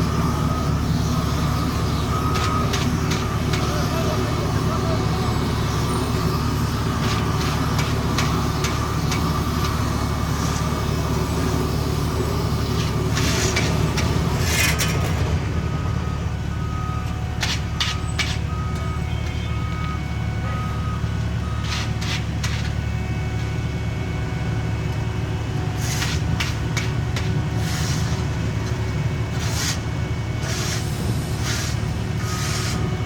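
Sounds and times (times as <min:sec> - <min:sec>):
reversing alarm beeping: 0:00.0 - 0:25.8, 0:29.0 - 0:33.0
diesel engines running: 0:00.0 - 0:33.0.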